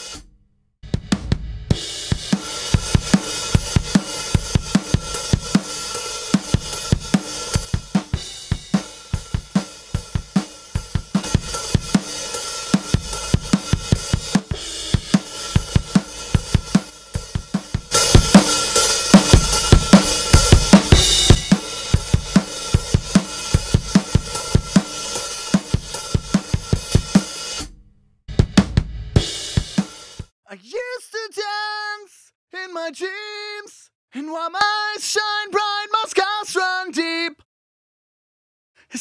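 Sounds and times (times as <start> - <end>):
snare drum: 1.0 - 30.3
cymbals: 11.2 - 27.8
kick drum: 28.3 - 29.8.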